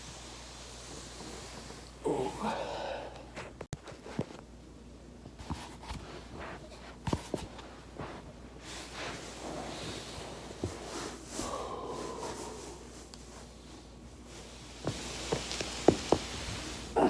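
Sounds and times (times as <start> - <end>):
body rubbing on foam roller: 5.4 - 17.0.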